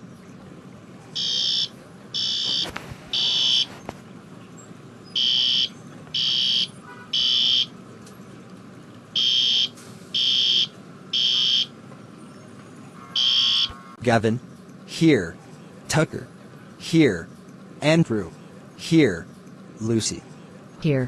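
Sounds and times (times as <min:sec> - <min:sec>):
fire alarm beeping: 0:01.2 - 0:03.7, 0:05.2 - 0:07.7, 0:09.2 - 0:11.8, 0:13.0 - 0:14.0.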